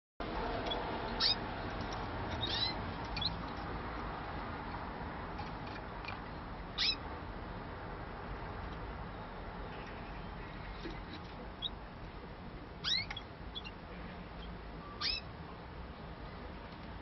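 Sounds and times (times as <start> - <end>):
canary call notes: 0.7 - 1.5, 2.3 - 3.5, 6.7 - 7.0, 12.8 - 15.3.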